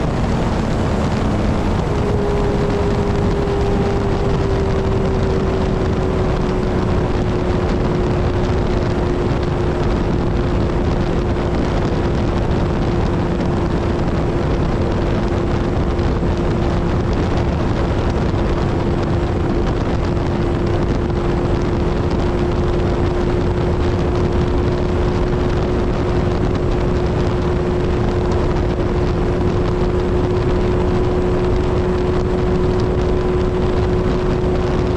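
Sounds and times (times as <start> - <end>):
motorcycle engine cruising: 0.0 - 34.9
wind rush over microphone: 0.0 - 34.9.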